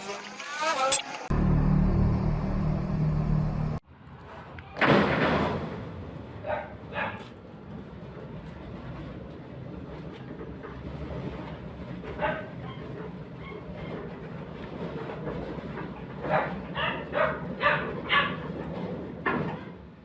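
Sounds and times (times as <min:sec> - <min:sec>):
sliding gate motor rumbling: 0:01.3 - 0:03.8
dog barking: 0:06.4 - 0:07.3, 0:12.2 - 0:12.9, 0:16.2 - 0:18.5.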